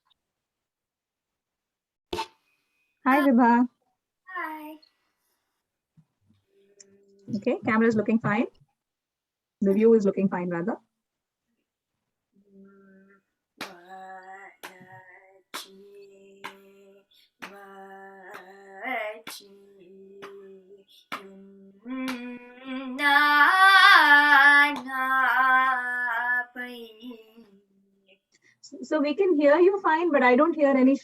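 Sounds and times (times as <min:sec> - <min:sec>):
woman singing: 0:12.8 - 0:27.6.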